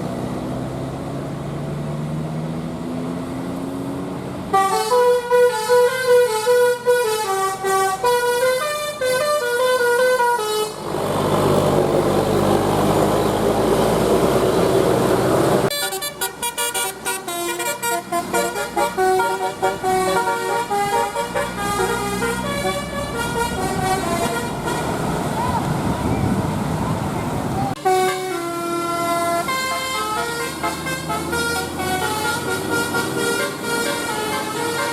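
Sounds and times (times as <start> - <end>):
engine and road noise: 0.0 - 34.9
bus musical air horn: 4.5 - 13.2, 15.6 - 25.4, 27.8 - 34.9.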